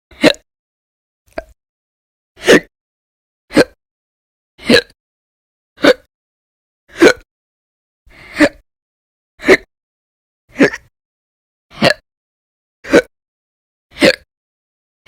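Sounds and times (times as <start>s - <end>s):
woman hiccuping: 3.5s - 3.8s, 5.8s - 6.1s, 6.9s - 7.3s, 14.0s - 14.3s.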